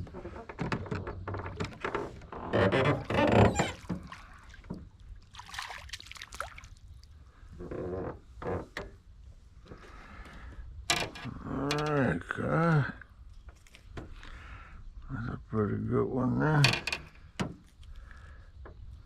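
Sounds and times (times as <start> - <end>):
water sounds: 2.8 - 7.5.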